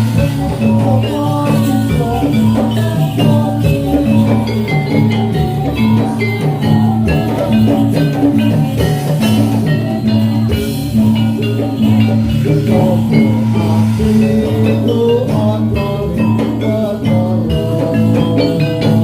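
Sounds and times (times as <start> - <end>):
drum strokes: 0.0 - 19.0
held low tone: 0.0 - 19.0
metallophones playing quick melody: 0.0 - 19.0.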